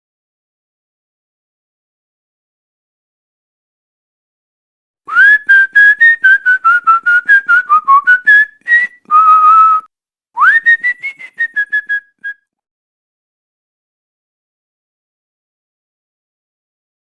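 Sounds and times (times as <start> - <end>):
person whistling a tune: 5.1 - 12.6.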